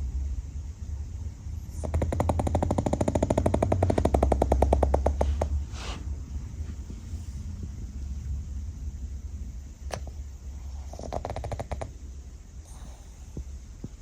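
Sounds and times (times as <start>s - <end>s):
dog snoring: 1.6s - 5.6s, 9.9s - 14.0s
short breathy exhale: 5.7s - 6.1s.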